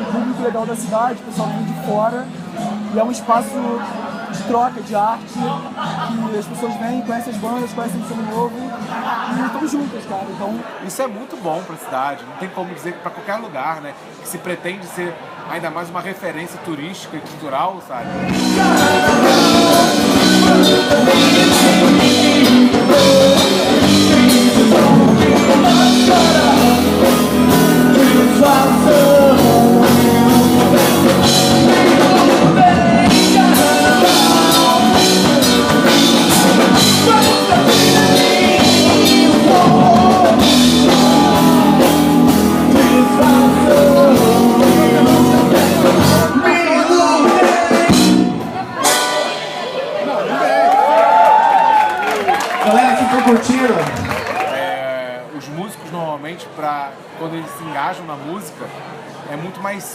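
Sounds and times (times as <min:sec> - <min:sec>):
guitar: 0:00.0 - 0:10.7, 0:18.0 - 0:54.5
person singing: 0:18.1 - 0:49.5
drum kit: 0:18.2 - 0:49.9.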